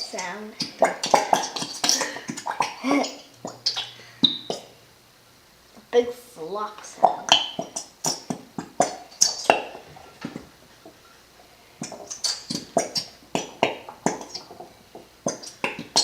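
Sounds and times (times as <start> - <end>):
glue bottle sputtering and squirting: 0.6 - 4.7, 11.8 - 16.0.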